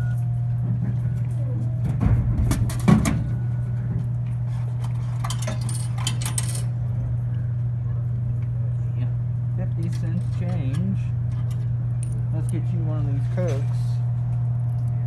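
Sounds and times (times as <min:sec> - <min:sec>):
vending machine clattering: 0:00.0 - 0:07.4, 0:09.3 - 0:15.0
steady low hum: 0:00.0 - 0:15.0
coins clinking: 0:04.5 - 0:06.7, 0:09.7 - 0:12.7.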